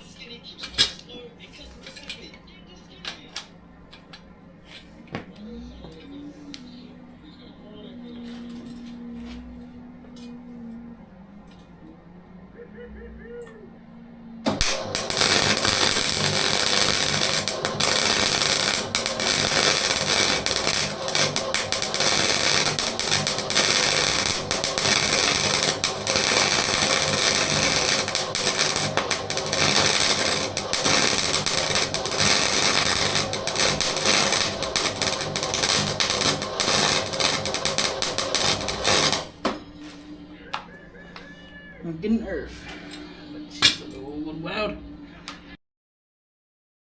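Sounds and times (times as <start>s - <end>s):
arc welder crackling: 14.4s - 39.6s.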